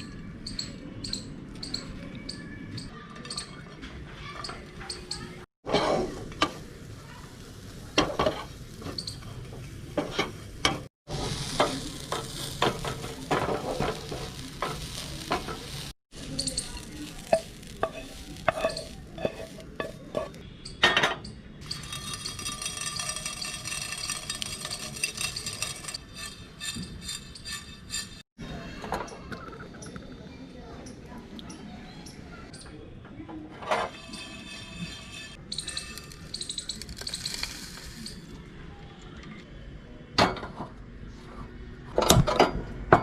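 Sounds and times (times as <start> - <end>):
food sizzling in hot oil: 6.2 - 20.4, 21.6 - 28.2
spatula scraping a pan: 11.1 - 20.4, 21.6 - 28.2, 33.8 - 36.2.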